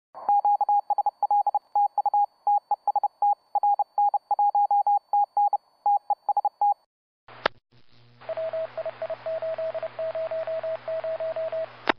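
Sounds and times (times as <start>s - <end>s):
high morse code beeps: 0.2s - 6.8s.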